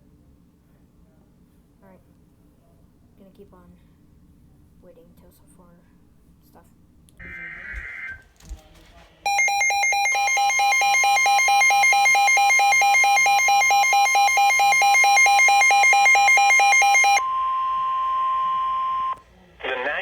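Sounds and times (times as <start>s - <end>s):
steady warning alarm tone: 7.2s - 8.3s, 9.3s - 19.2s
rapid pulsing beeps: 9.3s - 19.2s.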